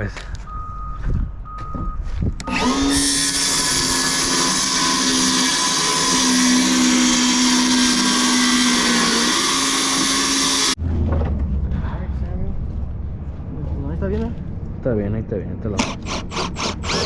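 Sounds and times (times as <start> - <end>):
electric saw cutting wood: 2.5 - 10.8, 15.8 - 17.0.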